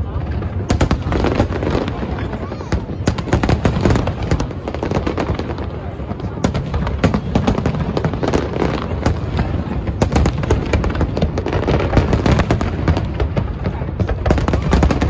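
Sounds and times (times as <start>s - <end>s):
fireworks bursting: 0.0s - 15.0s.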